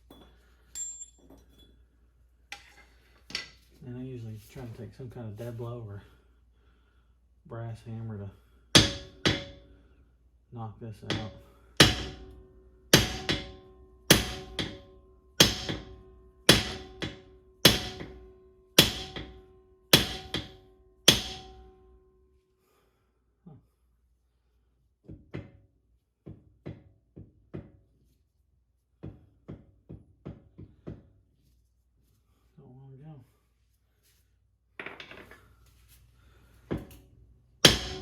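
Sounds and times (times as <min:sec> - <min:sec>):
hammer striking metal shaft: 0:08.8 - 0:09.7, 0:11.0 - 0:21.9, 0:37.6 - 0:38.0.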